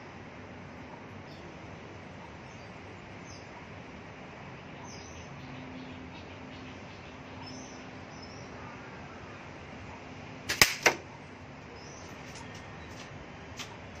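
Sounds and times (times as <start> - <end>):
steady background noise: 0.0 - 14.0
bird chirps: 4.7 - 8.6.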